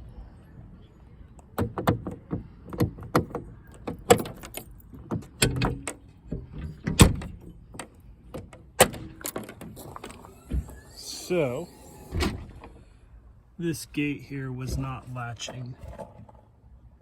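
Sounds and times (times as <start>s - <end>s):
metal latch clicks and clunks: 1.4s - 10.9s.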